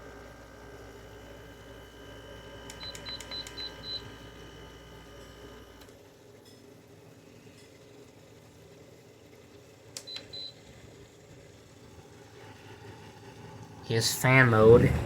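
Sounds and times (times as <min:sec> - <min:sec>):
air conditioner humming: 0:00.0 - 0:15.0.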